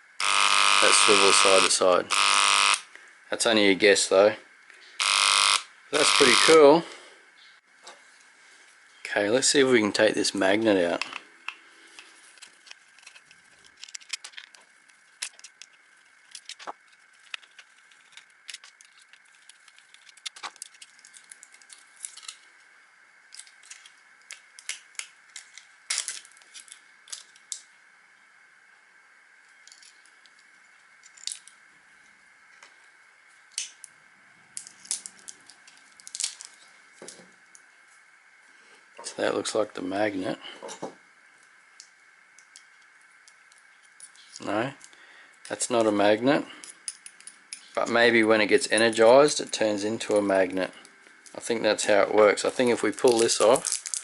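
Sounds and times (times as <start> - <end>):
small plastic parts clicking and rattling: 10.9 - 22.6, 23.3 - 27.7, 29.6 - 31.6, 34.6 - 37.6, 52.6 - 54.0.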